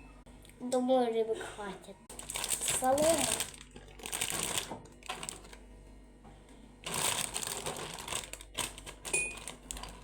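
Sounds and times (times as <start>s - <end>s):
crinkling and rustling: 2.1s - 5.7s, 6.8s - 10.0s.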